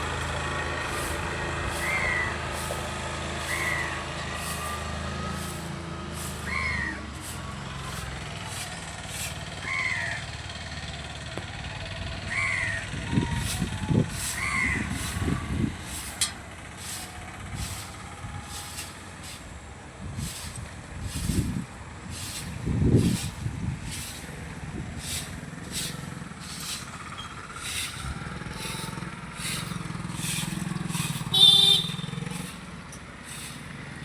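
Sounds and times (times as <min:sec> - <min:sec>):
engine low hum: 0:00.0 - 0:34.0
bird arched cries: 0:01.7 - 0:02.8, 0:03.4 - 0:04.8, 0:06.2 - 0:08.1, 0:09.2 - 0:10.3, 0:12.3 - 0:16.2, 0:25.0 - 0:32.5
low rumbles: 0:12.0 - 0:33.0.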